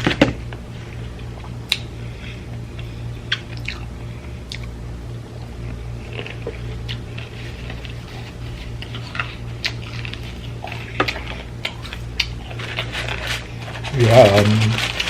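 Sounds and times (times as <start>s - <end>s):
steady low hum: 0.0s - 15.0s
wet chewing: 2.7s - 4.8s, 5.4s - 13.6s.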